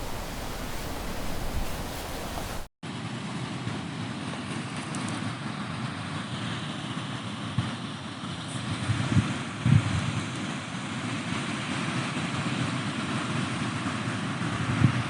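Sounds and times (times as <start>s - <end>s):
surf rushing: 0.0s - 2.7s
wind rumble on microphone: 0.0s - 2.7s, 7.2s - 15.0s.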